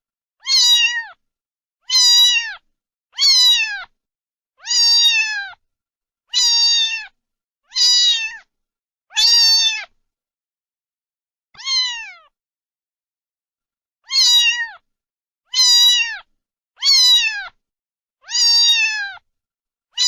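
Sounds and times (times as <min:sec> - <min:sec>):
cat meowing: 0:00.4 - 0:01.2, 0:01.8 - 0:04.0, 0:04.6 - 0:05.6, 0:06.3 - 0:08.5, 0:09.1 - 0:10.0, 0:11.6 - 0:12.4, 0:14.0 - 0:14.8, 0:15.5 - 0:17.6, 0:18.2 - 0:19.2.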